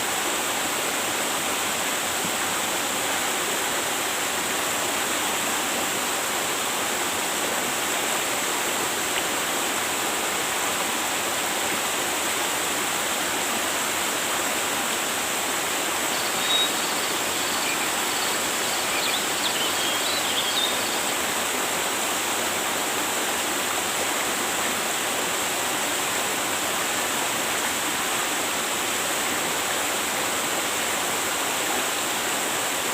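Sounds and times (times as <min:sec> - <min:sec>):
river water rushing: 0:00.0 - 0:32.9
faint high chirps: 0:16.1 - 0:21.1.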